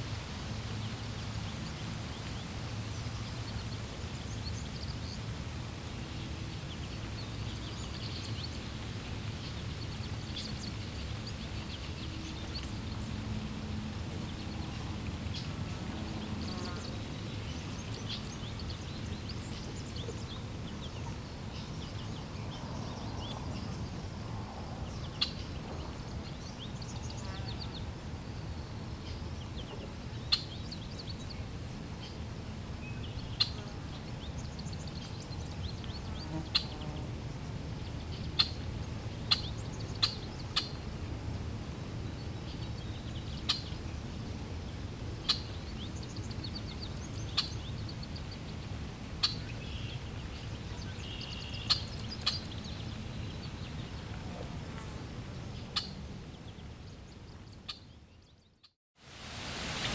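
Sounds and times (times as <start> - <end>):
small birds chirping: 24.8 - 40.8, 42.1 - 54.5, 55.2 - 58.8
water flowing: 59.0 - 59.9.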